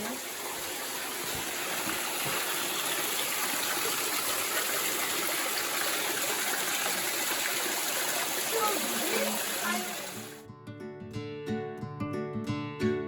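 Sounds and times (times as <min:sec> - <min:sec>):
spring water flowing: 0:00.0 - 0:10.4.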